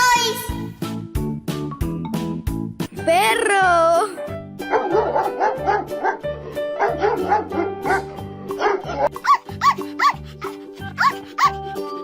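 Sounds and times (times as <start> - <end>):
dog barking: 4.7 - 10.2, 11.0 - 11.6.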